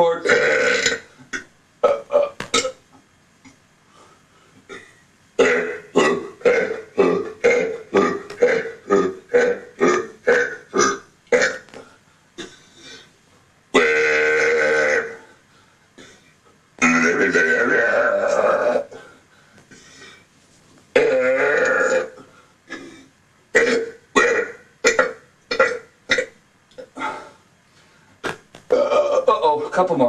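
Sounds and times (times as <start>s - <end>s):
man burping: 0.0s - 2.8s, 4.7s - 12.6s, 13.7s - 15.3s, 16.8s - 19.0s, 20.9s - 27.4s, 28.2s - 29.6s.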